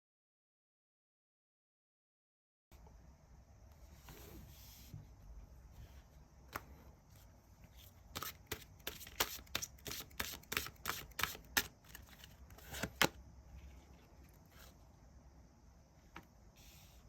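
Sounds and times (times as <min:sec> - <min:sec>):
cards being shuffled: 0:07.8 - 0:13.2.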